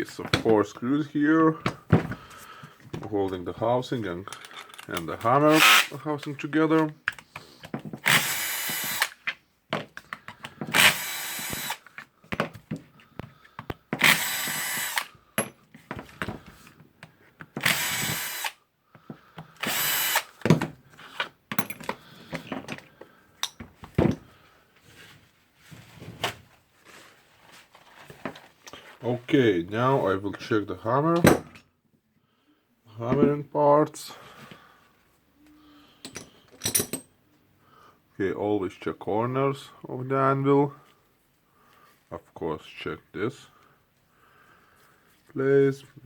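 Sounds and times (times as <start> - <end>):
metal parts clinking: 4.3 - 6.0, 21.5 - 22.0, 36.0 - 37.1
power drill running in bursts: 5.5 - 5.9, 8.0 - 9.2, 10.7 - 11.8, 14.0 - 15.1, 17.6 - 18.6, 19.6 - 20.3.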